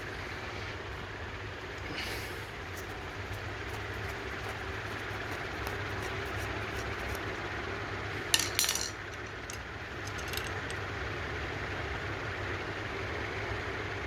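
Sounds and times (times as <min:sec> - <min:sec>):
steady low workshop hum: 0:00.0 - 0:14.0
small metal clinks: 0:08.3 - 0:10.9.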